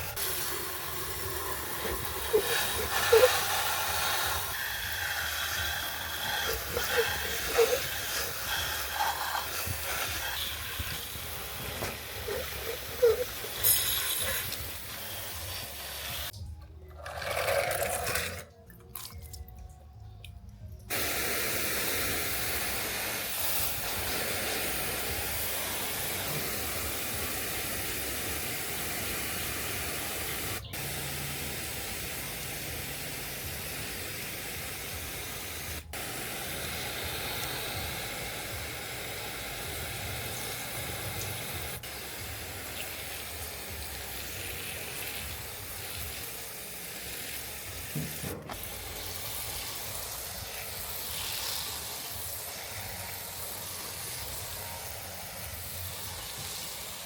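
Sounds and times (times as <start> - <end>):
spraying hiss: 0.0 - 16.4, 20.9 - 57.0.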